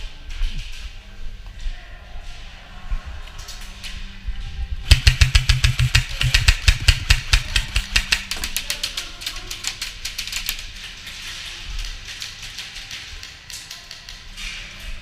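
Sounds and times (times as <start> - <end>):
airsoft gun firing bursts: 4.9 - 8.9.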